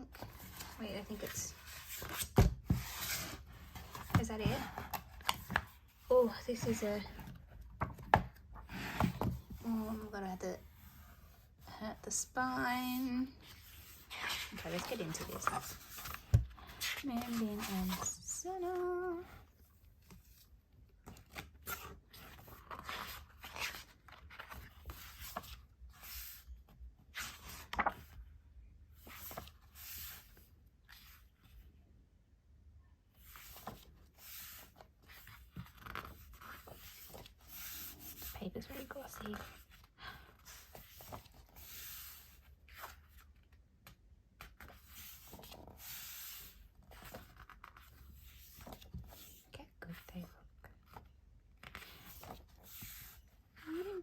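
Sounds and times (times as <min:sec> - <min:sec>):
photo book pages turning: 0:00.1 - 0:10.1, 0:12.8 - 0:19.4, 0:20.0 - 0:28.2, 0:29.0 - 0:31.6, 0:33.2 - 0:49.4, 0:50.8 - 0:54.0.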